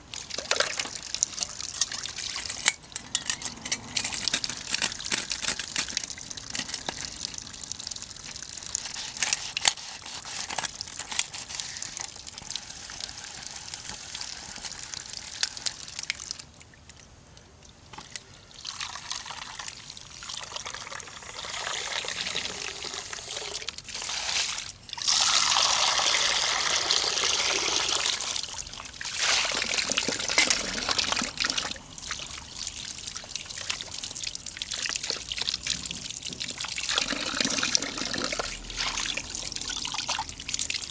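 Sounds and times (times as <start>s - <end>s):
liquid pouring into pot: 18.5s - 40.9s.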